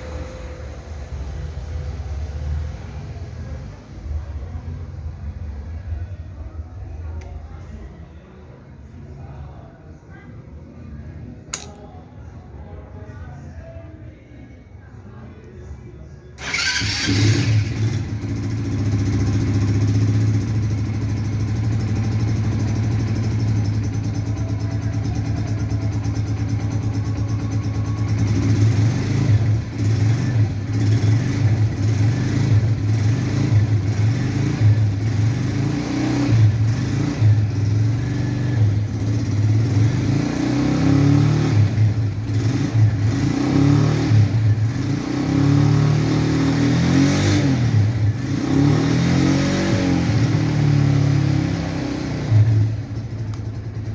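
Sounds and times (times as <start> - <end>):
engine running and revving: 16.4 - 53.9.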